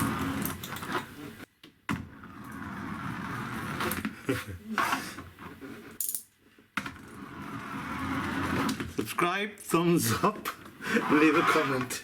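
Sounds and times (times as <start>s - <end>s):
toy car gears whirring: 0.0s - 1.0s.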